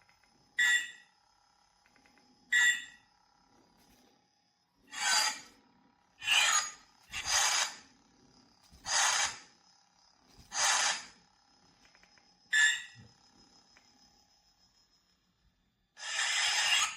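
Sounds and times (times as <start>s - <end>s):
faint steady hum: 0.0s - 16.9s
toy lightsaber swings: 16.0s - 16.9s.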